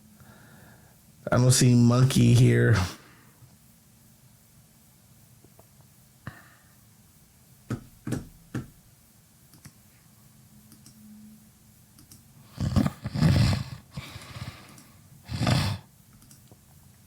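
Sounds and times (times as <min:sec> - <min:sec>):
faint low hum: 0:00.0 - 0:17.0
sharp clicks and knocks: 0:07.7 - 0:08.7.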